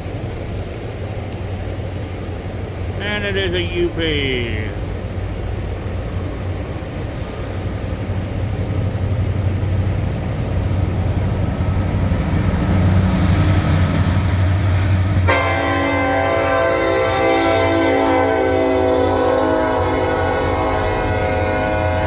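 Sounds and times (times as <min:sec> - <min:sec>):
diesel locomotive engine rumble: 0:00.0 - 0:22.0
train air horn: 0:15.3 - 0:22.0.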